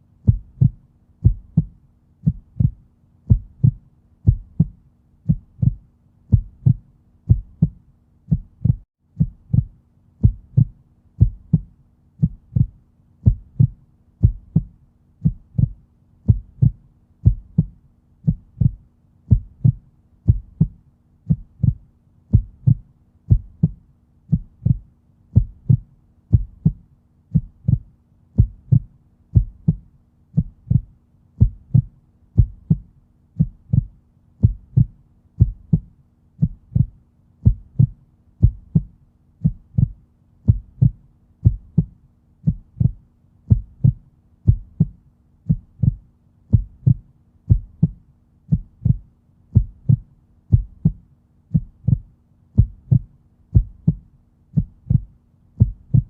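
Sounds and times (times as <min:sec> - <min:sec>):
slow heartbeat: 0:00.2 - 0:56.0.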